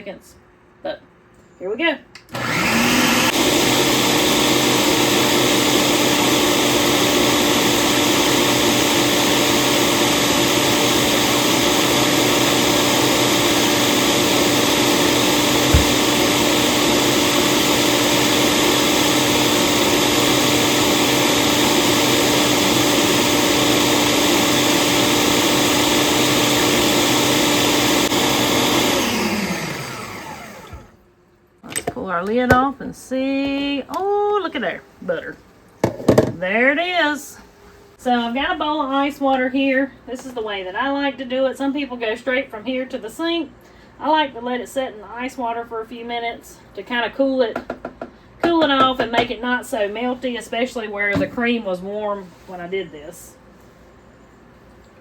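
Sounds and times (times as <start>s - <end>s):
food processor motor whining: 2.2s - 31.0s
food processor knock: 13.9s - 17.0s, 35.8s - 36.4s, 47.5s - 49.3s.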